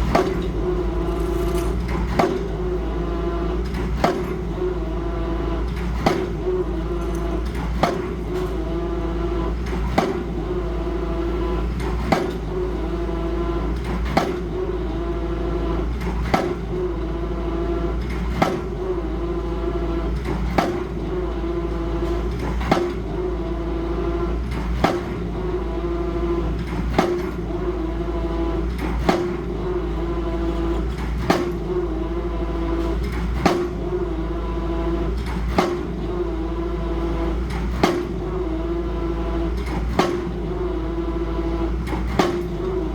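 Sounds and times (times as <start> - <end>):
mechanical hum with low rumble: 0.0 - 42.9.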